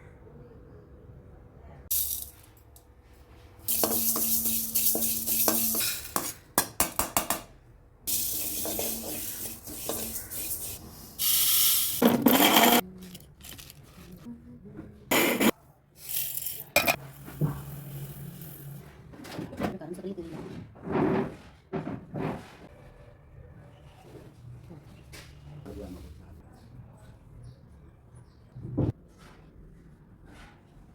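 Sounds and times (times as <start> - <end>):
kitchen utensils clinking and scraping: 1.9 - 2.6, 3.6 - 7.3, 8.1 - 14.2, 15.1 - 18.8.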